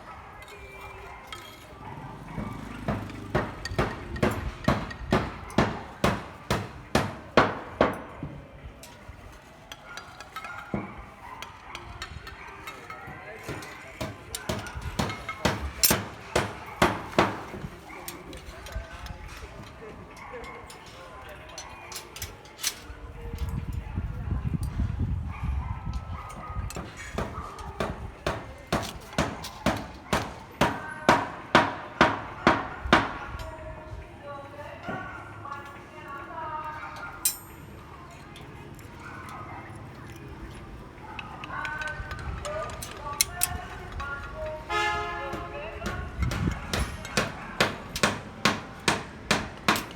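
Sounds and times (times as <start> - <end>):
hand hammer striking: 2.8 - 8.1, 13.5 - 17.6, 26.8 - 33.2, 45.3 - 49.9.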